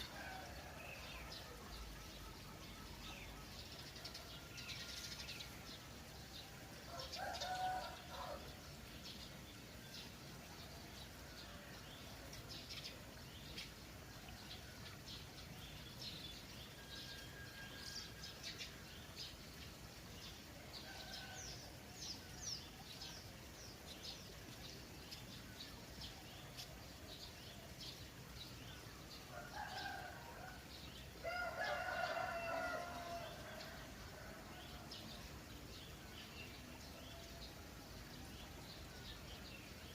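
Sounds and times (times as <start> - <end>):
trickling water: 0.0 - 39.9
rooster crowing: 6.9 - 8.4, 31.2 - 33.7.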